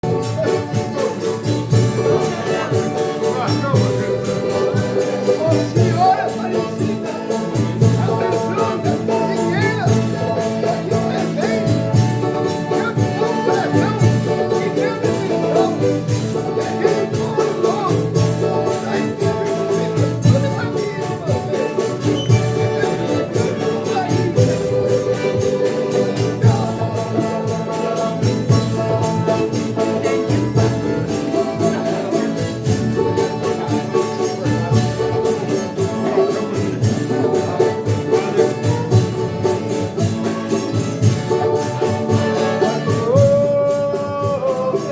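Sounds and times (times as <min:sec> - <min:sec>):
group singing: 0:00.0 - 0:44.9
strummed strings: 0:00.0 - 0:44.9
tambourine: 0:00.0 - 0:44.9.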